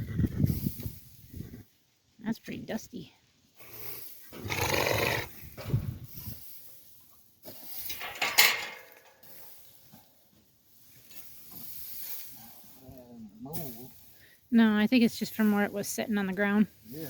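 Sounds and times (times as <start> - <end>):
horse snorting: 3.6 - 5.4.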